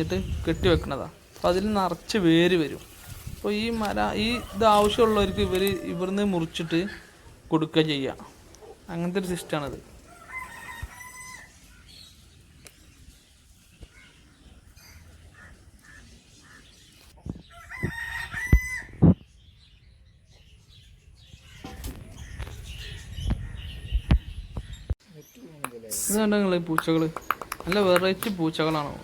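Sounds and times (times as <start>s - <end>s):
rooster crowing: 4.2s - 6.6s, 10.1s - 11.5s, 17.6s - 18.9s.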